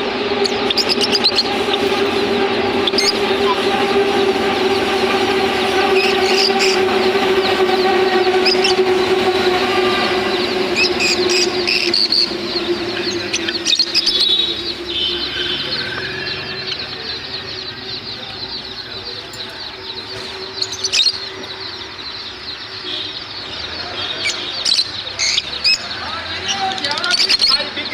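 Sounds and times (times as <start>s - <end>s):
steady low hum: 0.0s - 18.2s
cage birds chattering and chirping: 0.0s - 27.9s.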